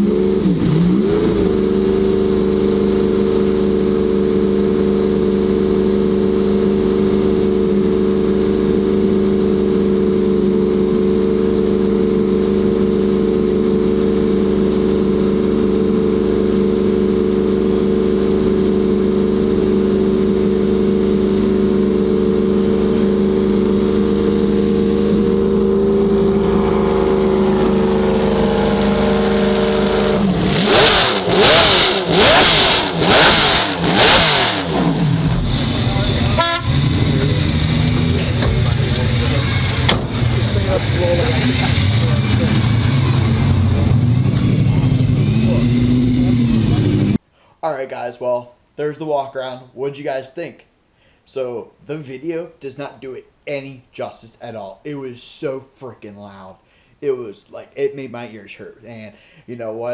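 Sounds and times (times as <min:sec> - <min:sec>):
car engine running steadily: 0:00.0 - 0:47.2.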